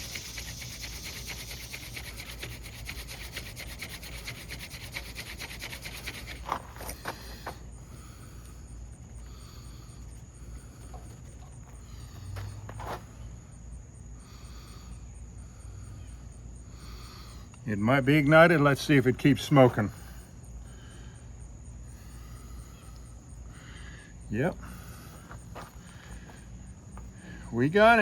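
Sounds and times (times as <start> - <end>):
wooden rubbing of hand drill: 0.0 - 7.4
insects trilling: 0.0 - 28.0.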